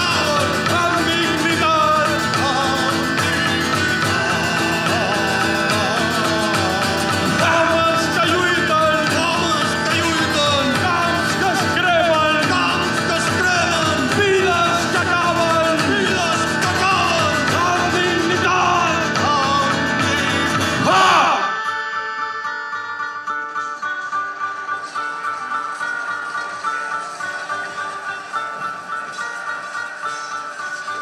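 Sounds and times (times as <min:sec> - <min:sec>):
person singing: 0:00.0 - 0:22.5
guitar-led band playing: 0:00.0 - 0:31.0.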